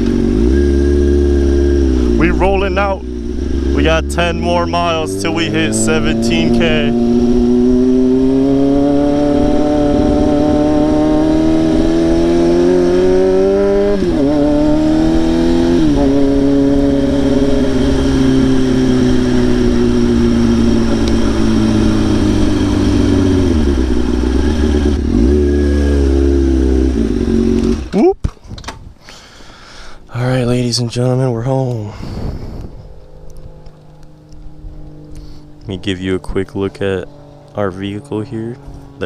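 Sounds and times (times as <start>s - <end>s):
wind rumble: 0.0s - 4.3s, 31.9s - 35.1s
motorcycle engine revving: 0.0s - 28.0s, 32.3s - 39.0s.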